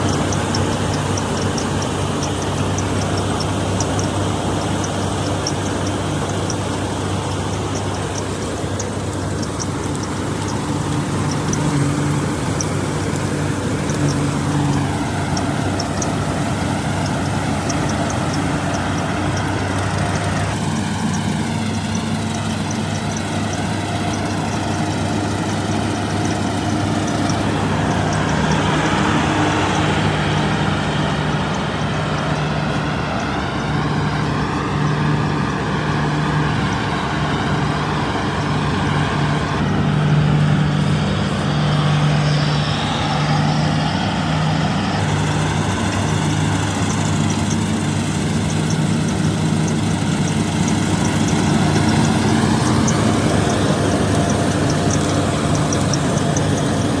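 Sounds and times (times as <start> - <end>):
diesel engine running under load: 0.0 - 57.0
light regular ticking: 0.0 - 57.0
threshing machinery: 0.0 - 57.0.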